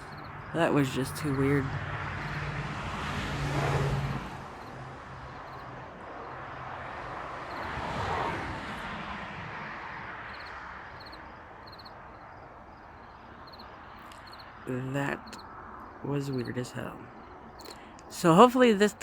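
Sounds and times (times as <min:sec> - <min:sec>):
crickets chirping: 0:00.0 - 0:03.0, 0:04.4 - 0:09.0, 0:09.6 - 0:18.8
vehicle passing by: 0:00.0 - 0:12.3.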